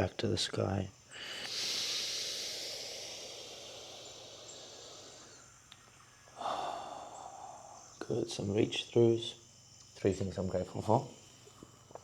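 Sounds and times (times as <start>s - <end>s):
slow breathy exhale: 1.1s - 8.0s.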